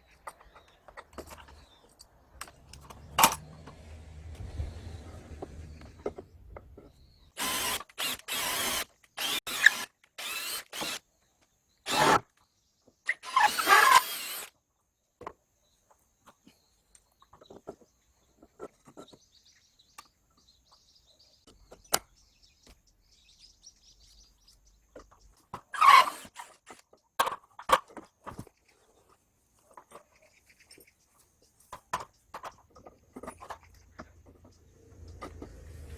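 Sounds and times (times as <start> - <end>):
power drill bursts: 7.4 - 11.0, 11.9 - 12.2, 13.1 - 14.5, 25.8 - 26.6.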